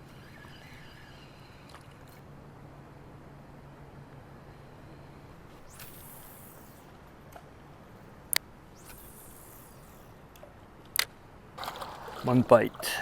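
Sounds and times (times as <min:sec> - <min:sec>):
fishing line swishing: 0:05.5 - 0:07.4, 0:08.1 - 0:10.3
fishing reel clicks: 0:05.6 - 0:06.9, 0:08.3 - 0:11.2
faint river noise: 0:07.8 - 0:13.0.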